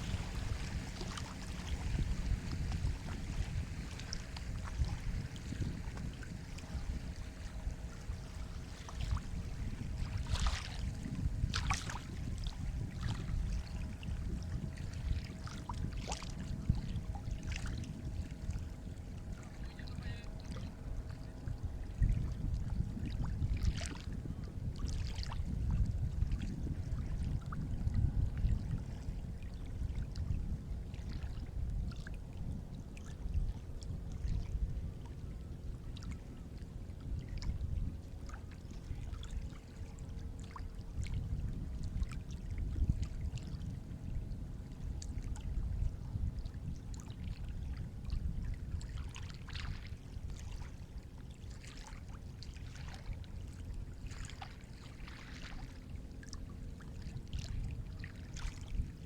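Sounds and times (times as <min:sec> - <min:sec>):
surf rumbling: 0:00.0 - 0:05.4
small water splashes: 0:00.0 - 0:13.9, 0:14.8 - 0:18.6, 0:23.2 - 0:24.1, 0:24.8 - 0:26.4, 0:48.8 - 0:59.0.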